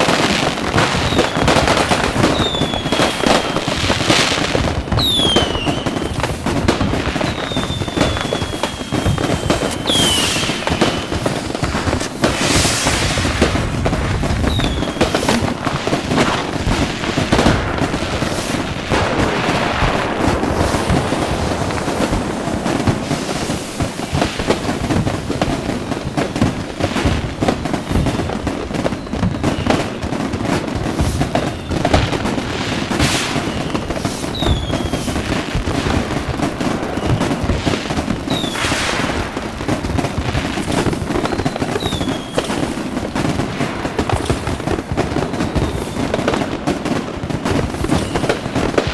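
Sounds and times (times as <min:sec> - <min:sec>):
fireworks bangs and crackling: 0:00.0 - 0:48.9
falling rocket whistles: 0:02.2 - 0:03.6, 0:05.0 - 0:16.4, 0:18.2 - 0:32.0, 0:33.0 - 0:39.9, 0:40.5 - 0:42.8, 0:47.8 - 0:48.5.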